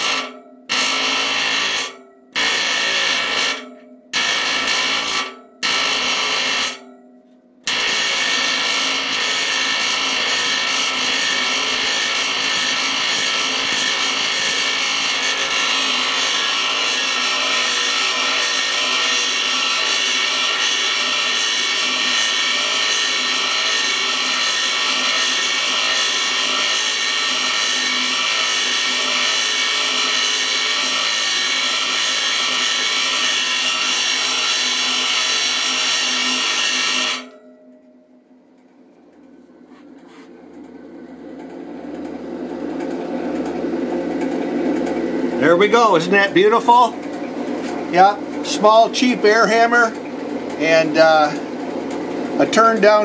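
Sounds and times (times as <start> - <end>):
pneumatic air hammer on metal: 0.0 - 6.8, 7.7 - 37.4.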